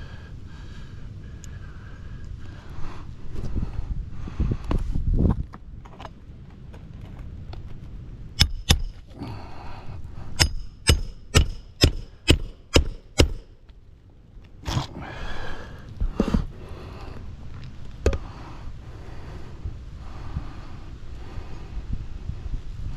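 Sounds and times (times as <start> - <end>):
metal tool striking roof: 8.4 - 9.0, 10.4 - 13.5.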